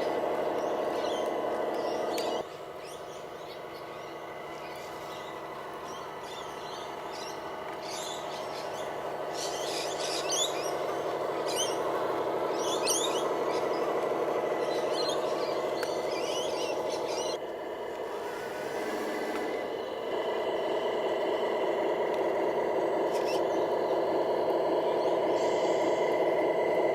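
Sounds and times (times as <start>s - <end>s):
toy electric motor whining: 5.1s - 17.4s, 18.0s - 19.8s.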